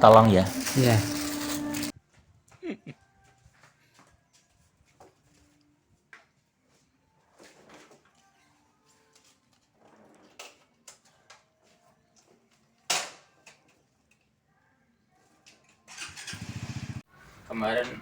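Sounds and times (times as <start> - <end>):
handling noises: 0.0 - 1.9
rough buzzing rasp: 16.2 - 17.0.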